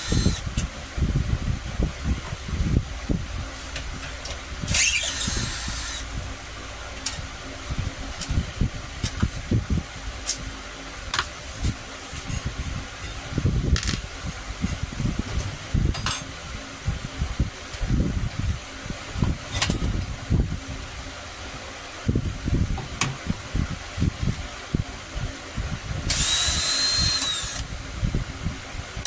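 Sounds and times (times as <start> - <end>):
tools knocking and clicking: 13.8 - 14.0.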